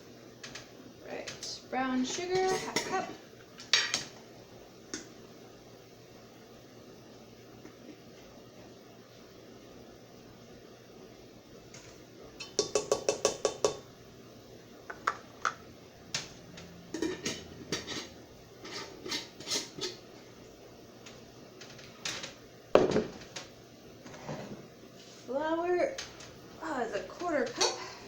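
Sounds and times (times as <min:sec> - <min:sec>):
utensils clinking against pot: 0:02.1 - 0:03.1, 0:16.9 - 0:20.0, 0:27.2 - 0:28.0.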